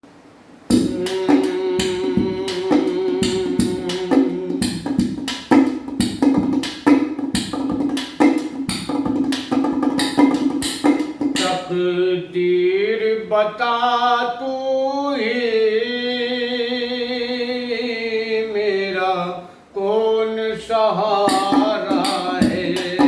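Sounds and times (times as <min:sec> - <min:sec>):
drum beat: 0:00.7 - 0:11.7, 0:21.3 - 0:23.0.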